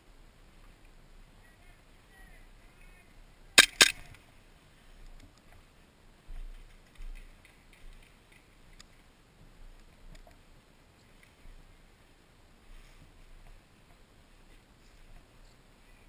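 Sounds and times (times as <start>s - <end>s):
distant airsoft gunfire clicks: 3.6s - 4.2s.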